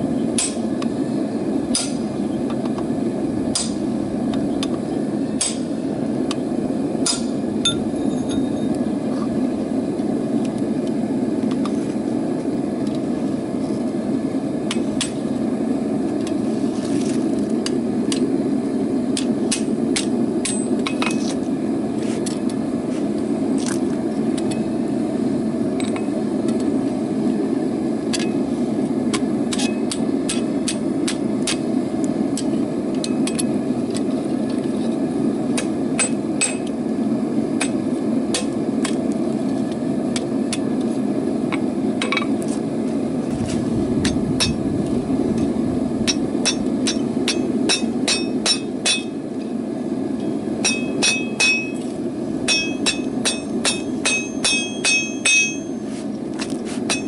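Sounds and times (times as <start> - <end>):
hammer striking metal on anvil: 0.4 - 0.7, 1.7 - 2.1, 3.5 - 3.8, 5.4 - 5.7, 7.0 - 8.5, 19.5 - 21.2, 35.6 - 36.7, 44.0 - 44.6, 46.0 - 49.2, 50.2 - 51.8, 52.5 - 55.8.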